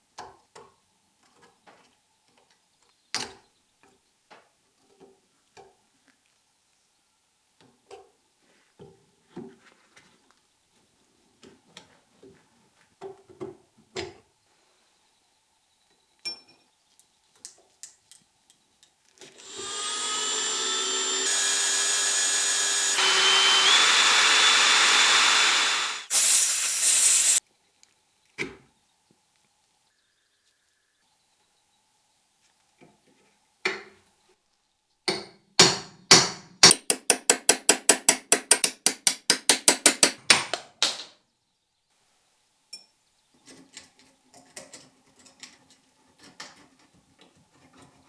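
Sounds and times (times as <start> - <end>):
electric power tool running: 19.4 - 27.4.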